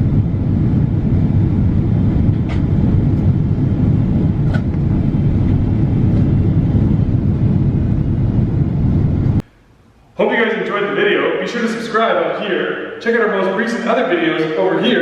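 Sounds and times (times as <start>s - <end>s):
airliner cabin rumble: 0.0s - 9.5s.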